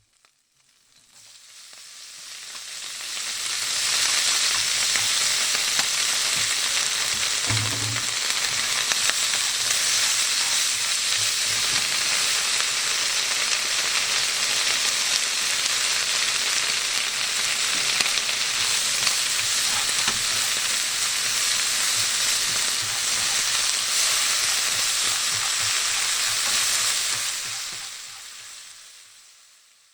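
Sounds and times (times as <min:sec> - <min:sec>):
vegetables sizzling in a pan: 0:00.0 - 0:29.9
taps and scrapes of stirring: 0:07.1 - 0:11.9, 0:18.9 - 0:28.4
dull knock: 0:07.5 - 0:08.2.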